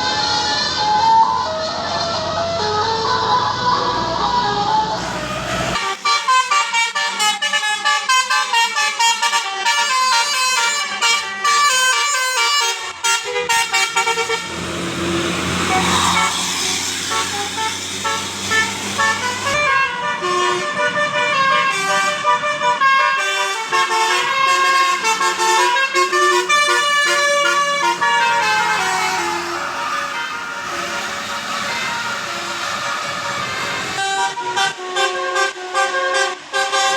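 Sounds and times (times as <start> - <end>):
bus musical air horn: 0.0 - 36.9
rushing noise: 13.8 - 20.8, 24.8 - 34.8.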